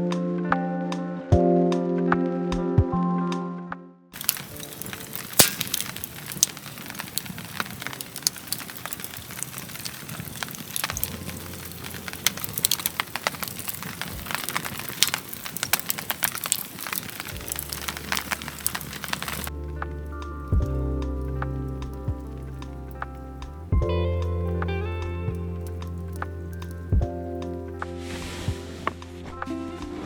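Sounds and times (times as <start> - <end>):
fire hiss: 4.2 - 19.5, 27.8 - 29.0
campfire crackling and popping: 4.2 - 27.8.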